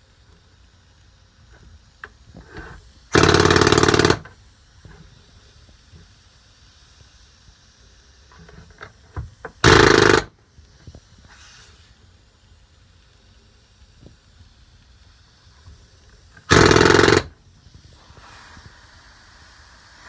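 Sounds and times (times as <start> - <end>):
pneumatic air hammer firing: 2.0 - 5.2, 8.3 - 12.0, 15.6 - 20.0.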